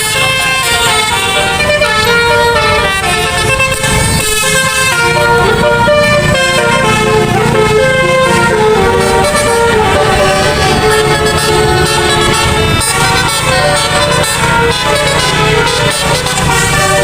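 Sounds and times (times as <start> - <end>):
bus engine rumble: 0.0 - 17.0
musical air horns playing tune: 0.0 - 17.0.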